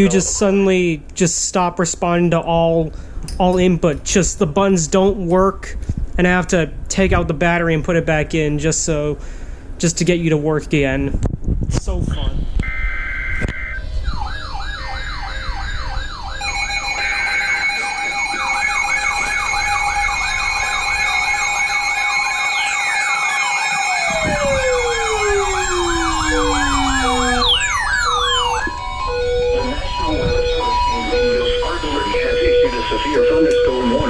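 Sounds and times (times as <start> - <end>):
electronic siren yelp: 12.5 - 34.0
falling whistles: 18.7 - 29.0.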